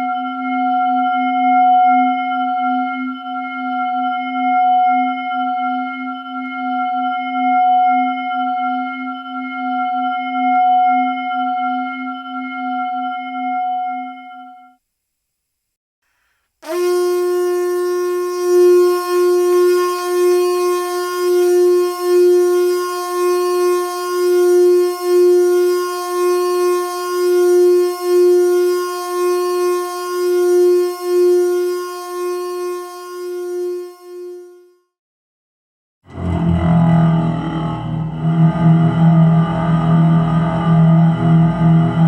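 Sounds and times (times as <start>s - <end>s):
reedy wind instrument note: 16.6s - 34.7s.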